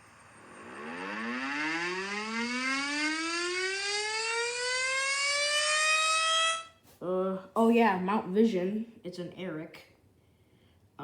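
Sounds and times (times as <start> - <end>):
warning siren winding up: 0.0 - 6.8.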